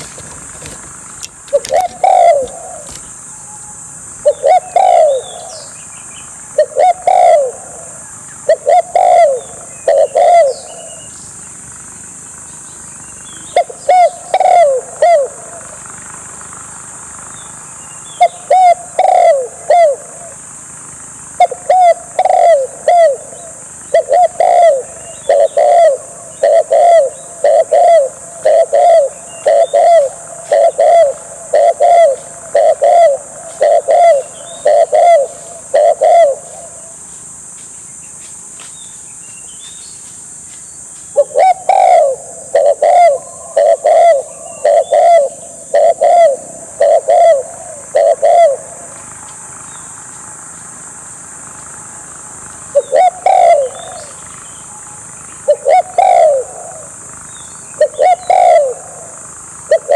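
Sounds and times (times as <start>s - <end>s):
dove cooing through speaker: 0.0s - 3.2s, 4.2s - 5.7s, 6.6s - 11.0s, 13.5s - 15.7s, 18.3s - 20.4s, 21.4s - 36.9s, 41.2s - 49.0s, 52.8s - 54.2s, 55.5s - 57.0s, 57.8s - 59.9s.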